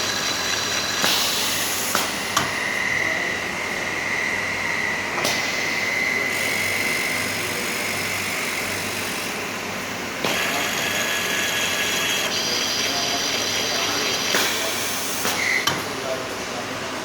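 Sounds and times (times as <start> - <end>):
machine hissing: 0.0 - 3.4, 4.2 - 16.0
high motor whines: 10.3 - 15.7.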